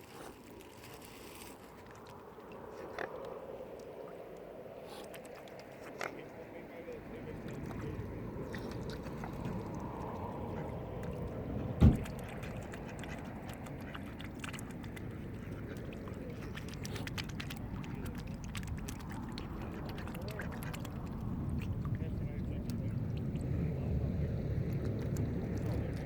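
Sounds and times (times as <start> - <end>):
low thump: 11.6 - 12.2.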